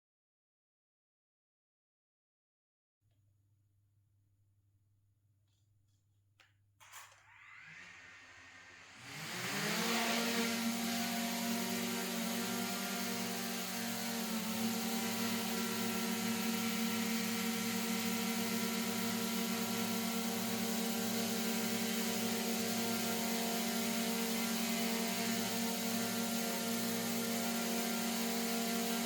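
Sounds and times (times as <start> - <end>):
drone propellers whining: 7.3 - 29.0.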